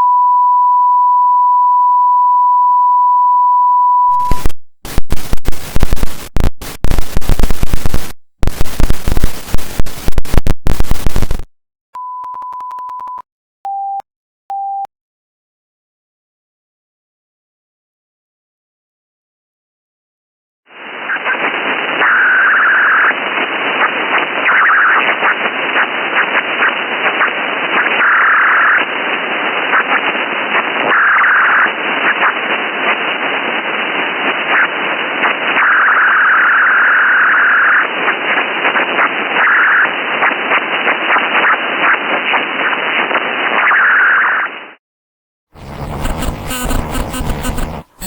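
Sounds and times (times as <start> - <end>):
buzzing tone: 4.1 - 11.5, 45.6 - 48.0
crackling static: 4.1 - 11.5, 20.7 - 44.8, 45.6 - 48.0.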